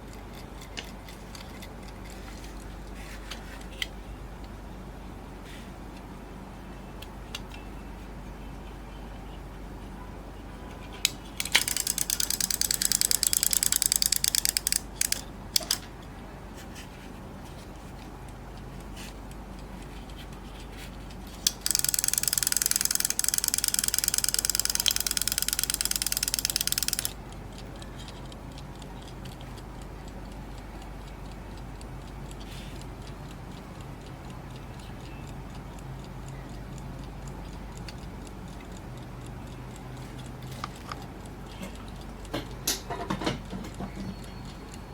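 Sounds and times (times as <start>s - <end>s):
clock ticking: 11.3s - 15.9s, 21.3s - 42.8s.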